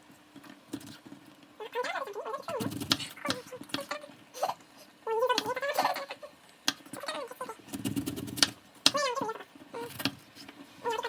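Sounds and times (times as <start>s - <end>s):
person making wordless sounds: 2.5s - 7.6s.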